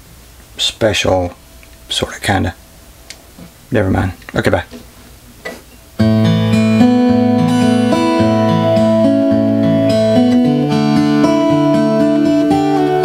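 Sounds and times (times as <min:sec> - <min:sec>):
acoustic guitar playing: 0:05.7 - 0:13.0.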